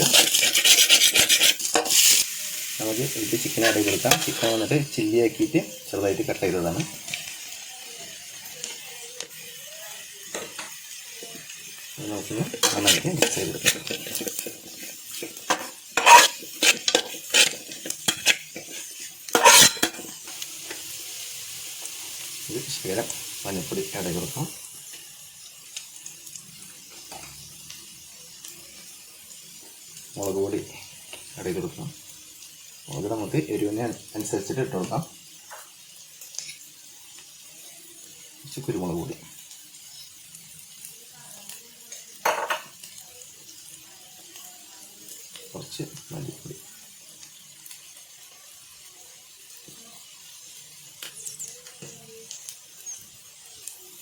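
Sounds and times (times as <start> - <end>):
utensil scraping a frying pan: 0.0 - 2.3, 3.1 - 7.2, 12.0 - 20.4
food sizzling in pan: 0.0 - 54.0.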